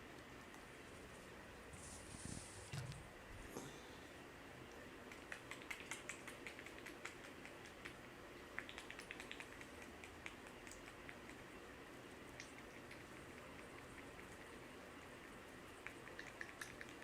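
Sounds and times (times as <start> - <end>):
fingers crackling through hair: 5.1 - 8.0, 8.6 - 11.4.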